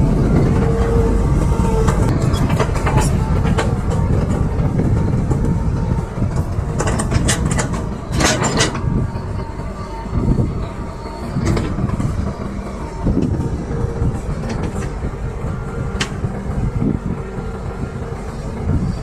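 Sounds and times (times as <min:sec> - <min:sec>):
diesel engine rumbling: 0:00.0 - 0:19.0
metallic clanks and clatter: 0:01.9 - 0:09.4, 0:11.3 - 0:12.5, 0:13.1 - 0:15.1.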